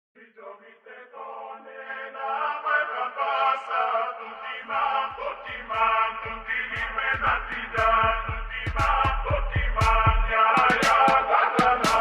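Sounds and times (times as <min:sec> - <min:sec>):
chant-like singing: 0:00.2 - 0:12.0
low music beat: 0:05.3 - 0:12.0.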